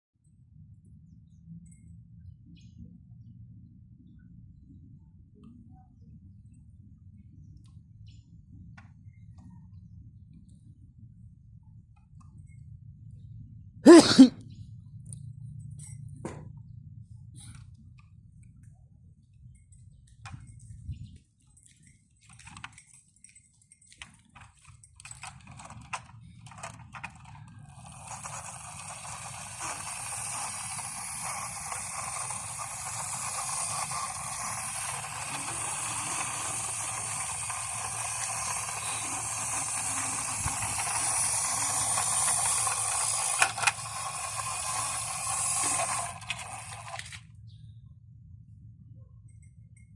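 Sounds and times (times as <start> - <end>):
toy motor and gears whirring: 20.1 - 47.4
toy handling clicks: 24.4 - 47.3.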